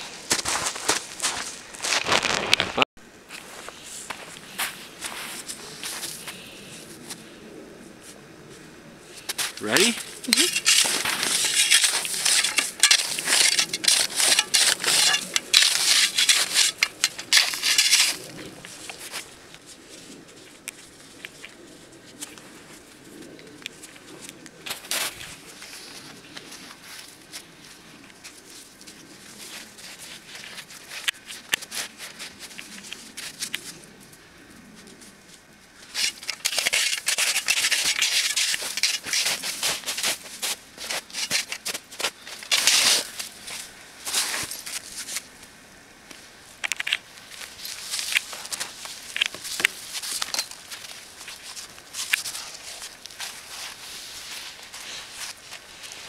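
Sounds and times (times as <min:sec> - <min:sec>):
snow crunching: 0:00.0 - 0:07.1, 0:09.2 - 0:22.8, 0:35.8 - 0:45.3.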